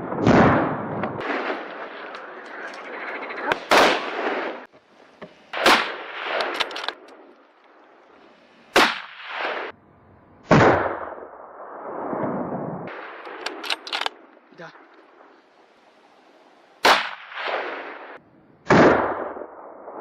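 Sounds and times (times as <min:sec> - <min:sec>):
gunshots with echo: 0:00.0 - 0:02.8, 0:03.4 - 0:04.7, 0:05.5 - 0:07.1, 0:08.7 - 0:09.8, 0:10.4 - 0:15.3, 0:16.8 - 0:20.0.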